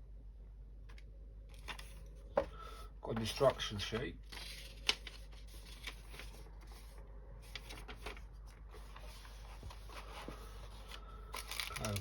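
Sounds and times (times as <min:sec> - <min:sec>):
packaging rustling: 0:04.2 - 0:12.0.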